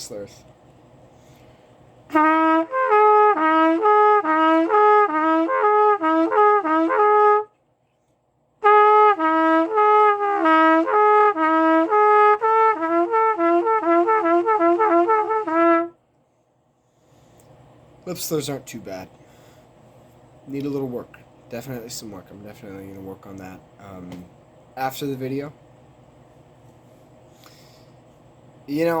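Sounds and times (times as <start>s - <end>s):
trumpet playing lip slurs: 2.1s - 7.6s, 8.6s - 16.0s.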